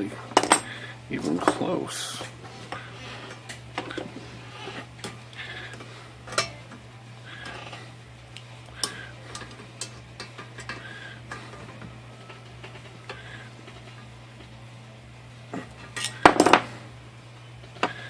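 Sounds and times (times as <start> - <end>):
steady low hum: 0.0 - 18.0
hand tools clicking on metal: 8.8 - 11.4.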